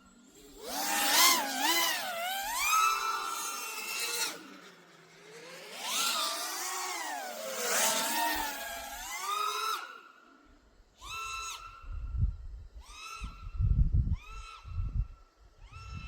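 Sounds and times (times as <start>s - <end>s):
drone propellers whining: 0.0s - 12.2s
wind buffeting microphone: 11.8s - 16.0s.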